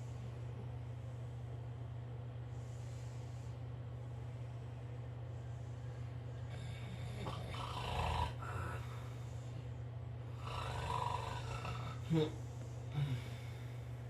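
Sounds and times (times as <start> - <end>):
steady low hum: 0.0 - 14.0
dog snoring: 6.4 - 9.1, 10.3 - 13.3.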